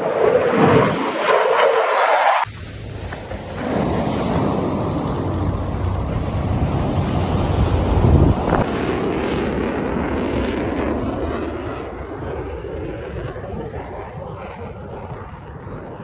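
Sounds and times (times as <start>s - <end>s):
jet flying past: 0.0s - 16.0s
wind buffeting microphone: 2.4s - 16.0s.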